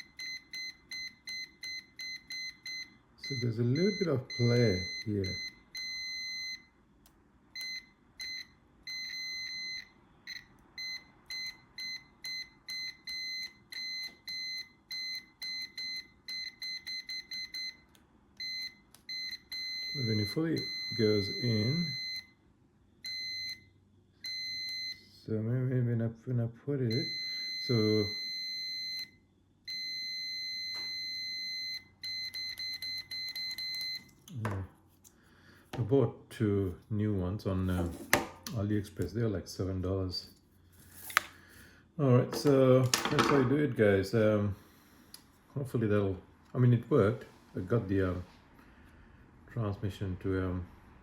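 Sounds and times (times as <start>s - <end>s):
multimeter beeps: 0.0s - 6.8s, 7.5s - 22.4s, 23.0s - 25.1s, 26.9s - 34.2s.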